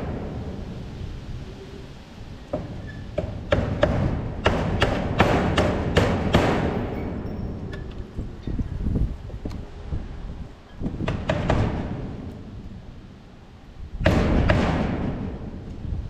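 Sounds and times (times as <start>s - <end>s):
sharp knocks: 2.5s - 7.0s, 10.8s - 12.3s
low steady rumble: 11.4s - 16.0s.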